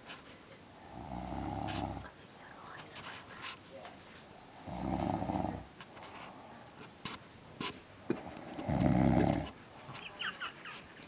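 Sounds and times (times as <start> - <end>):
woman snoring: 4.6 - 5.7, 8.4 - 9.4.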